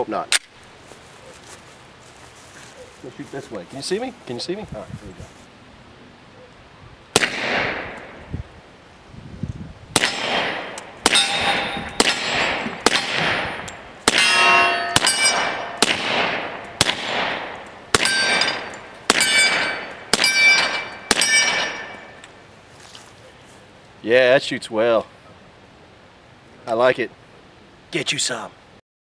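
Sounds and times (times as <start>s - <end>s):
suppressed pistol shots: 7.1s - 8.2s, 9.9s - 22.1s
steel target clanging: 10.0s - 22.3s.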